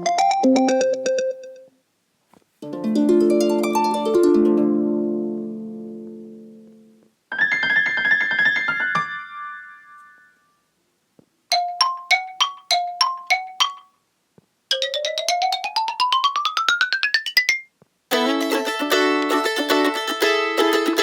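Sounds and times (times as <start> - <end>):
electronic ringtone melodies: 0.0 - 1.7, 11.5 - 13.9.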